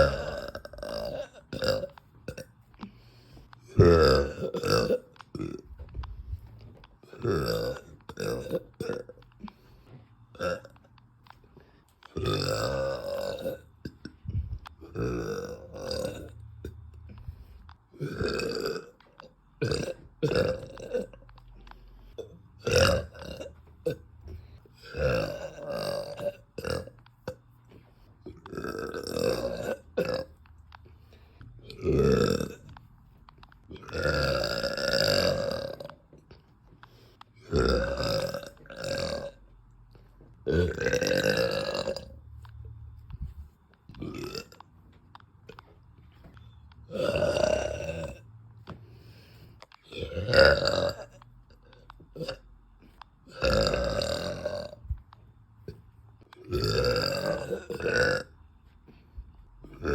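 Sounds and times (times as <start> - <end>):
woman burping: 0.0 - 2.6, 3.6 - 5.8, 7.0 - 9.2, 12.1 - 14.2, 14.8 - 16.8, 18.0 - 19.0, 19.6 - 21.3, 22.2 - 24.1, 24.8 - 27.4, 28.3 - 30.4, 31.6 - 32.7, 33.7 - 36.0, 37.4 - 39.4, 40.4 - 42.2, 44.0 - 44.6, 46.9 - 48.2, 49.9 - 51.2, 53.3 - 54.8, 56.4 - 58.3.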